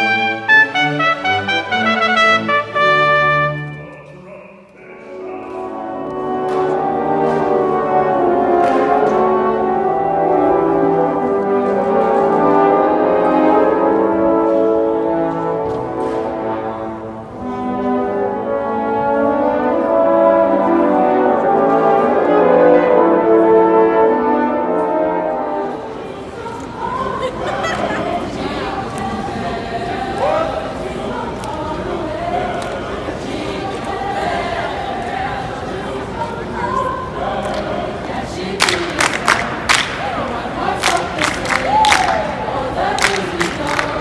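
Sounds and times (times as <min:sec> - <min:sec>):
brass ensemble playing chords: 0:00.0 - 0:04.4, 0:05.0 - 0:26.1.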